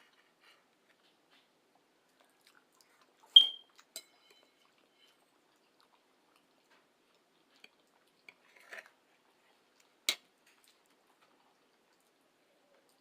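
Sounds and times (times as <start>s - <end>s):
person chewing food: 0.1s - 13.0s.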